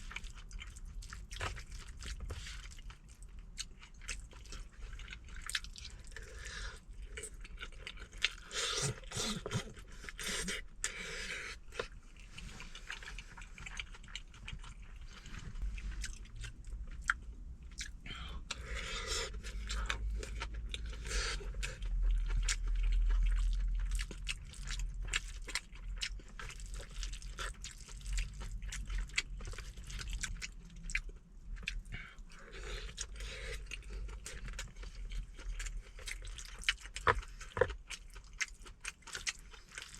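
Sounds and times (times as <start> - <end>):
close chewing and mouth sounds: 0.0 - 39.9
low rumble: 14.6 - 24.8.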